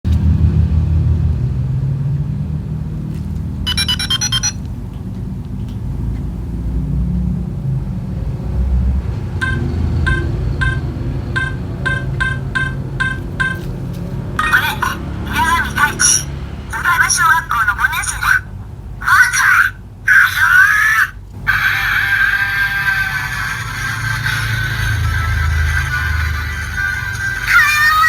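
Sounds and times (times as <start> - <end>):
low steady rumble: 0.1 - 28.0
toy electronic beeps: 3.7 - 4.6, 9.4 - 13.7.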